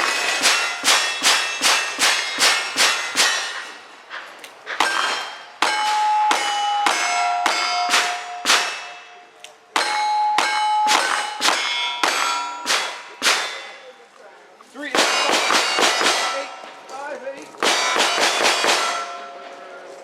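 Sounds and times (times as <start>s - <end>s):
steel plate ringing: 0.0s - 3.9s, 4.8s - 14.0s, 15.0s - 16.9s, 17.6s - 19.8s
gunshots: 9.8s - 13.8s, 15.0s - 16.7s, 17.6s - 19.4s.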